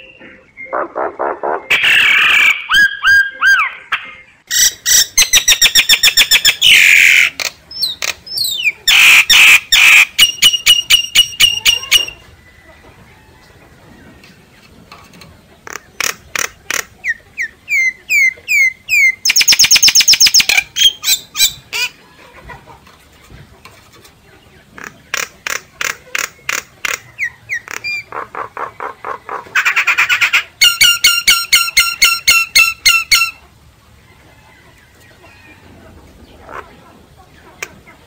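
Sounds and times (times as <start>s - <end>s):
myna calls: 0.7s - 12.3s.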